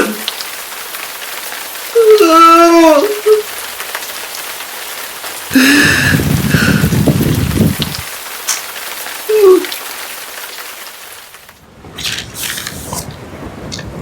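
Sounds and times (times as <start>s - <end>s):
steady rain: 0.0s - 14.0s
man crying: 5.5s - 6.8s.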